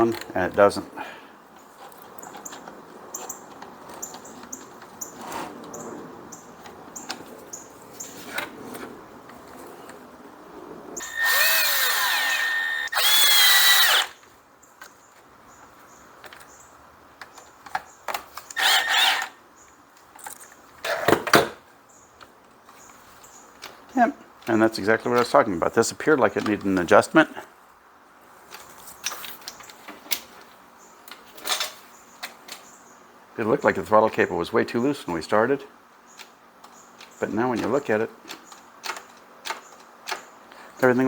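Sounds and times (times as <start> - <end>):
power drill running: 11.0 - 14.2, 18.6 - 19.4
parts clicking as handled: 36.1 - 40.3.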